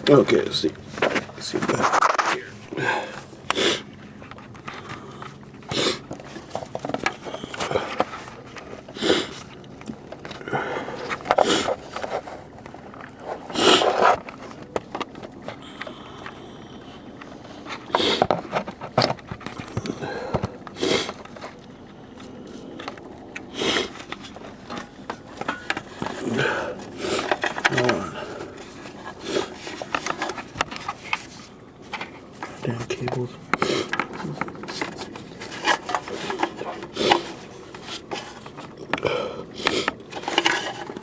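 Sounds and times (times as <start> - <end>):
hands rummaging among cables: 0.0 - 41.0
loud sniffing breath: 2.7 - 3.9, 8.9 - 9.5, 13.4 - 14.2, 19.8 - 21.2, 23.5 - 24.0.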